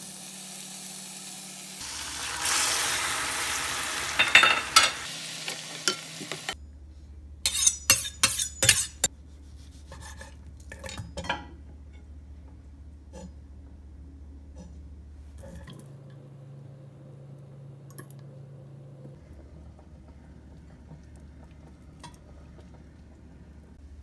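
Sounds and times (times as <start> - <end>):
food sizzling in oil: 0.0 - 6.6
utensil clacking on cookware: 4.0 - 6.6, 7.5 - 9.1.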